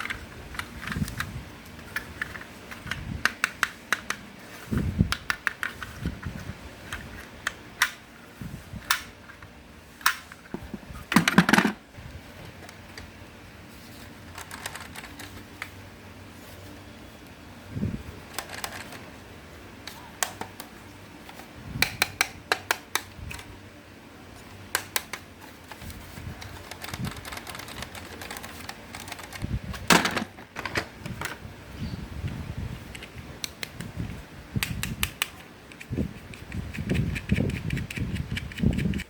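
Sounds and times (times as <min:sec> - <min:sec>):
plastic objects clicking and clattering: 0:11.1 - 0:11.8, 0:24.8 - 0:31.4.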